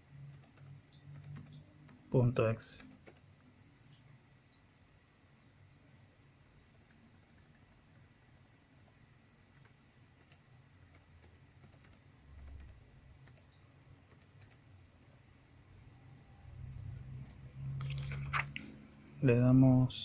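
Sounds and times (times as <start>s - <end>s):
laptop keyboard clicking: 0.3s - 2.1s, 6.6s - 9.0s, 9.6s - 13.5s, 14.1s - 14.6s, 17.3s - 18.6s.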